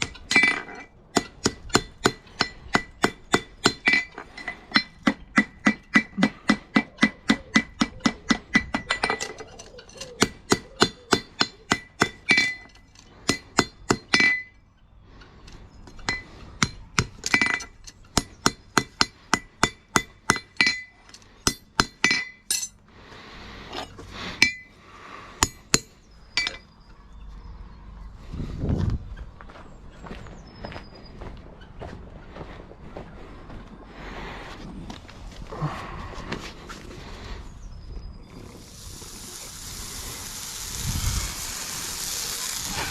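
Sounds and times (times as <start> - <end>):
hammer striking metal: 0.0 - 9.3, 10.1 - 14.6.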